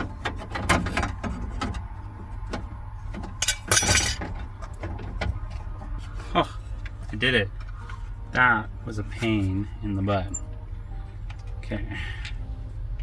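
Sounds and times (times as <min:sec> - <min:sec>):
low steady rumble: 0:00.0 - 0:13.0
rattling scrape: 0:03.4 - 0:04.3.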